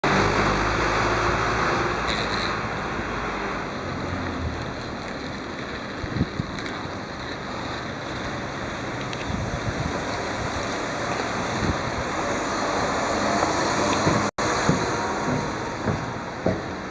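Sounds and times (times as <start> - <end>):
steady rushing noise: 2.7 - 16.9
low thump: 14.0 - 16.8.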